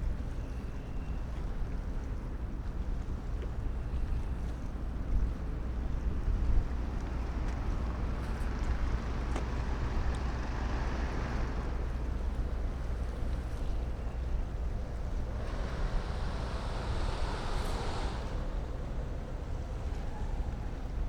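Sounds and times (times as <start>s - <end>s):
low hum of ship machinery: 0.0s - 21.0s
rushing noise: 14.4s - 19.9s.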